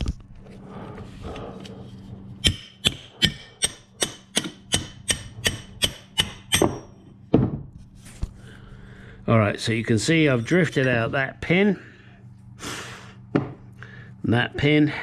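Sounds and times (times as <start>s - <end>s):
hammer striking metal drift: 2.4s - 7.1s.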